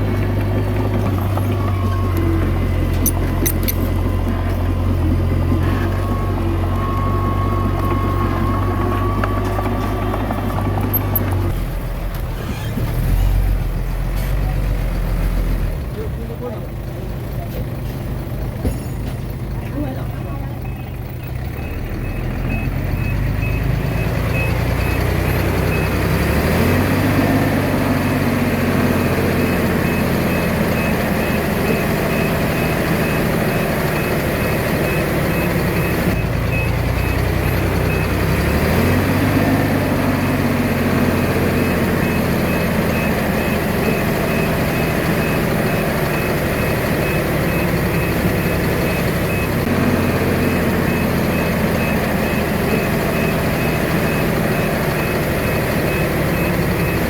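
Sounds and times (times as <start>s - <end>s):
bulldozer diesel engine under load: 0.0s - 57.0s
backup alarm beeping: 20.6s - 57.0s.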